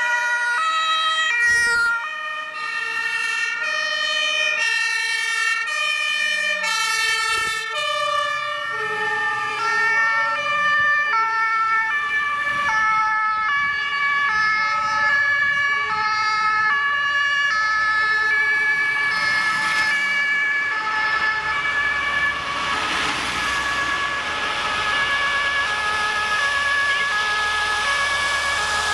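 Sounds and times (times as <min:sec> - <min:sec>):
two-tone sirens: 0:00.0 - 0:28.9
vehicle engine and road noise: 0:02.6 - 0:28.9.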